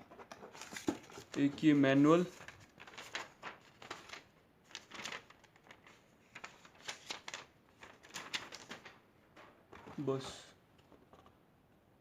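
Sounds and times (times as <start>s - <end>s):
paper rustling: 0.1s - 9.0s.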